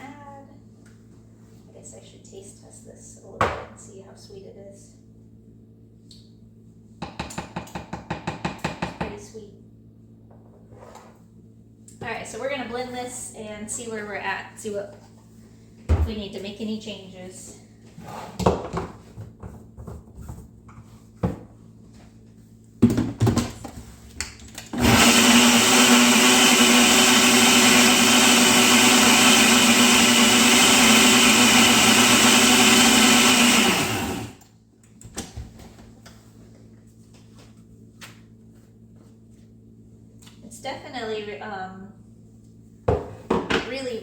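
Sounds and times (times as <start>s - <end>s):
blender running: 24.7s - 34.4s.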